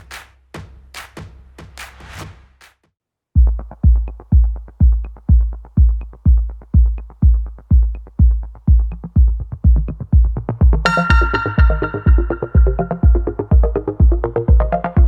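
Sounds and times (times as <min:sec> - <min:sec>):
deep kick drum beating: 0:03.4 - 0:15.0
synth chords: 0:03.4 - 0:15.0.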